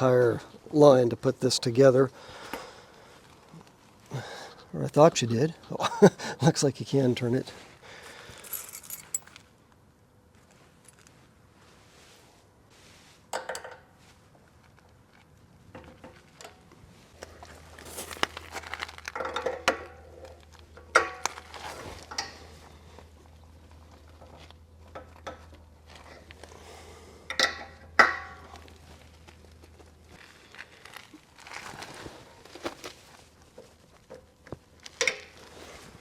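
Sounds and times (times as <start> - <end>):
metallic clinks of tools and fittings: 8.4 - 9.4.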